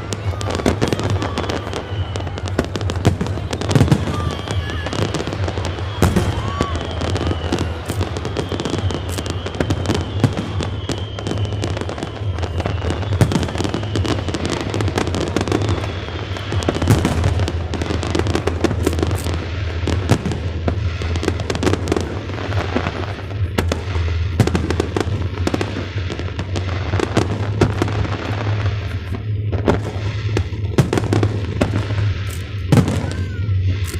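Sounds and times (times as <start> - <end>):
fireworks bangs and crackles: 0.0 - 33.9
steady rumble: 12.1 - 33.9.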